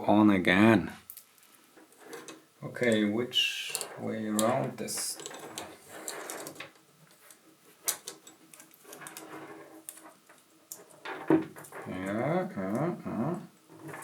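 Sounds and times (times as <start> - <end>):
saw chain clicking and rattling: 3.7 - 6.6.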